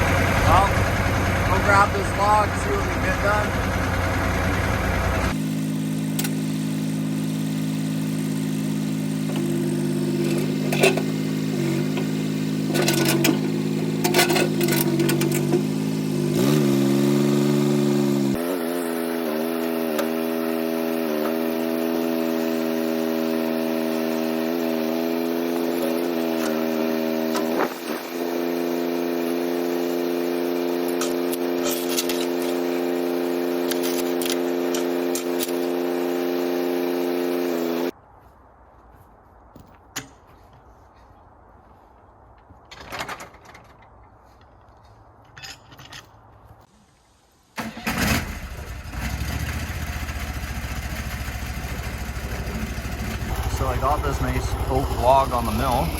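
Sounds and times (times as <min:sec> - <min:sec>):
backhoe engine running: 0:00.0 - 0:37.9, 0:47.6 - 0:55.9
sharp metal clanks: 0:12.7 - 0:15.7.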